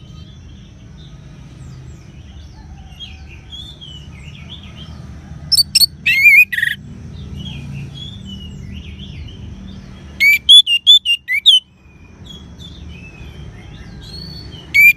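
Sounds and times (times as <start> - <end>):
bird whistling sharp notes: 5.5 - 6.8, 10.2 - 11.6.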